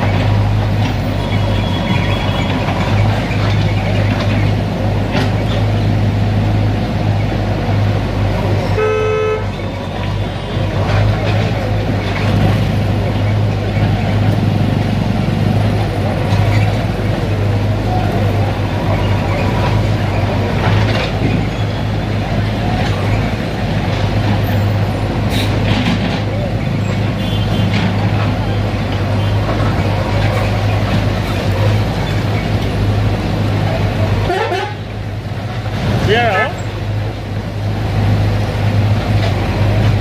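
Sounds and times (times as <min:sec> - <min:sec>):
short horn toot: 0:08.8 - 0:09.5.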